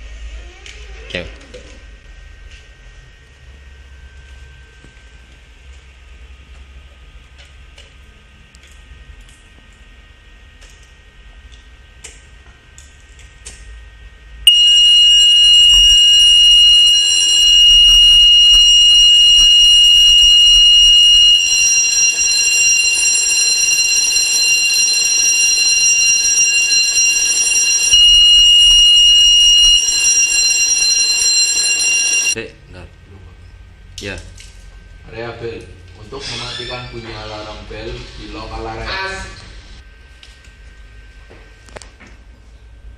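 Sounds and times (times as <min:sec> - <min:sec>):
high-pitched fire alarm tone: 0:14.5 - 0:32.4.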